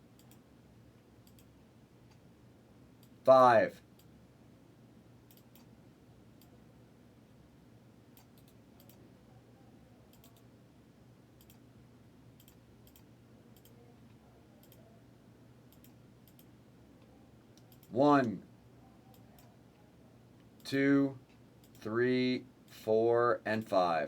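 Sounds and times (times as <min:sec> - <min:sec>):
low room hum: 0:00.0 - 0:24.0
soft sharp clicks: 0:00.1 - 0:00.4, 0:01.2 - 0:01.5, 0:05.3 - 0:05.7, 0:08.1 - 0:09.0, 0:11.4 - 0:11.6, 0:12.4 - 0:14.8, 0:15.7 - 0:18.4, 0:20.4 - 0:21.9.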